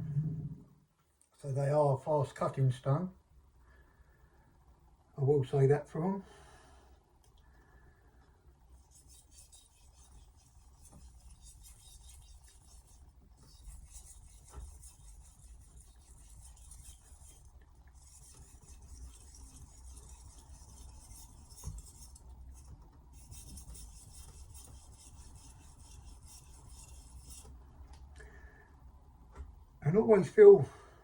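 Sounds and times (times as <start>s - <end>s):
knife scraping on whetstone: 8.8s - 27.5s.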